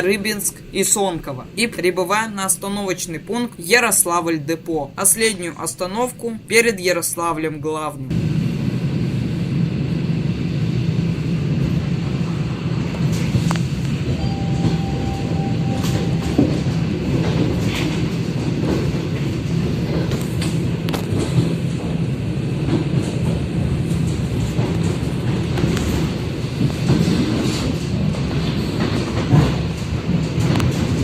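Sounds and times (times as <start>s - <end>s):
train wheels rumbling on rails: 8.1s - 31.0s
thin steady tone: 14.2s - 16.8s.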